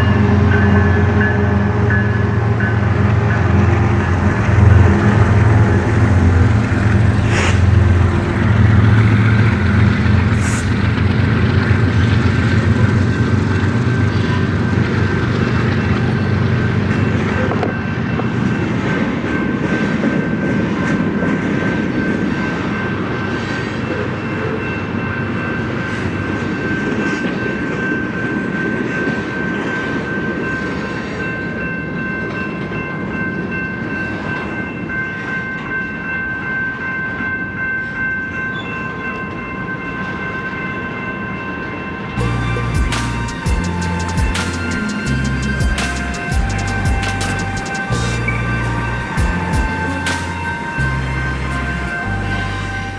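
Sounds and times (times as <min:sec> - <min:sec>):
freight train rumble: 0:00.0 - 0:36.0, 0:36.7 - 0:52.9
wheels clicking on rails: 0:03.1 - 0:27.8, 0:38.2 - 0:52.9
wheels squealing: 0:03.6 - 0:18.0, 0:42.2 - 0:52.9.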